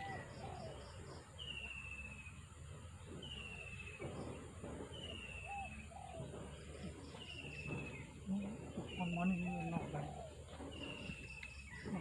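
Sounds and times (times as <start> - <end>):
low outdoor background noise: 0.0 - 12.0
faint high bird chirps: 4.9 - 12.0.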